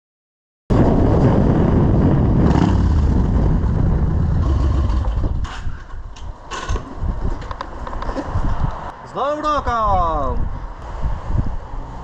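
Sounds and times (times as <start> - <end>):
motorcycle engine running: 1.1 - 5.4.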